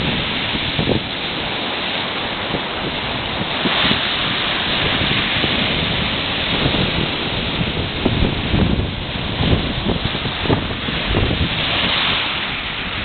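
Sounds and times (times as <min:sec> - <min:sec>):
sea surf washing ashore: 0:00.0 - 0:13.0
wind buffeting microphone: 0:00.0 - 0:13.0.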